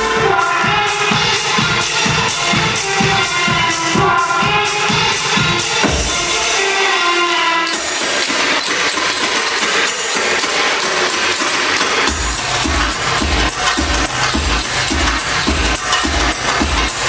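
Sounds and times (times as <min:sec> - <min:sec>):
dance music: 0:00.0 - 0:17.0.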